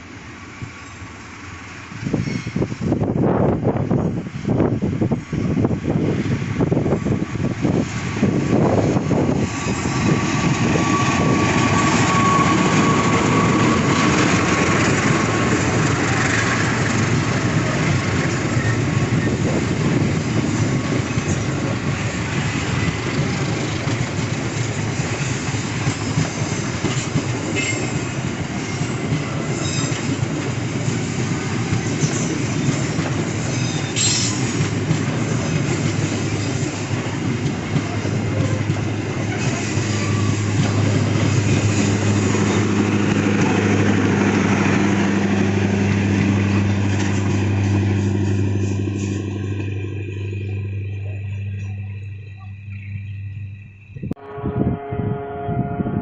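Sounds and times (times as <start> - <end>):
train wheels rumbling on rails: 0.0 - 56.0
high squeals and clicks: 9.5 - 15.2.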